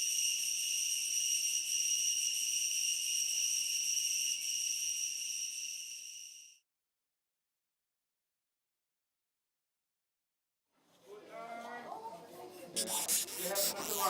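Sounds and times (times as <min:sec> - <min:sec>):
insect calling high-pitched tone: 0:00.0 - 0:06.6, 0:12.8 - 0:14.0.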